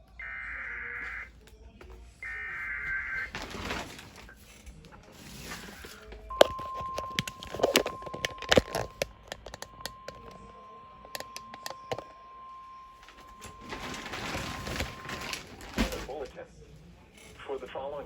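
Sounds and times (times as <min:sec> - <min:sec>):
radio static crackles: 0:00.0 - 0:18.0
steady high warning beep: 0:06.3 - 0:16.1.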